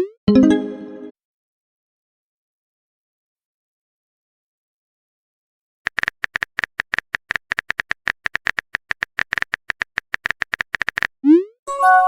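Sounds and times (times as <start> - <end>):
high-pitched clicking blips: 6.0 - 11.5.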